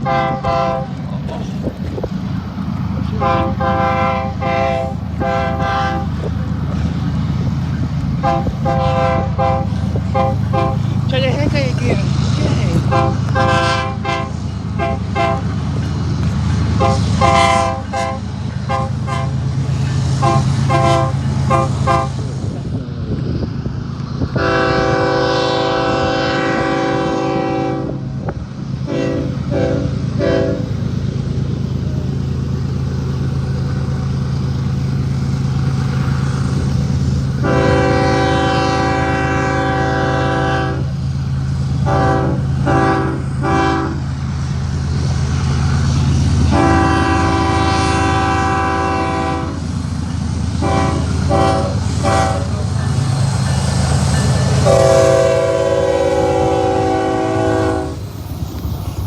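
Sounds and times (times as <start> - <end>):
train horn chord: 0.0 - 1.0, 3.2 - 6.3, 8.2 - 10.8, 12.8 - 15.6, 16.8 - 19.4, 20.2 - 22.2, 24.4 - 28.0, 28.9 - 30.8, 37.4 - 40.9, 41.8 - 44.0, 46.5 - 49.6, 50.6 - 52.7, 54.6 - 58.0
low engine hum: 0.0 - 27.0.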